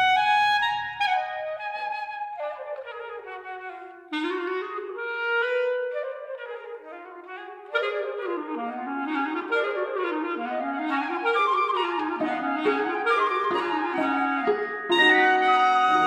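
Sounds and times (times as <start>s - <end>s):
small instrumental ensemble: 0.0s - 16.0s.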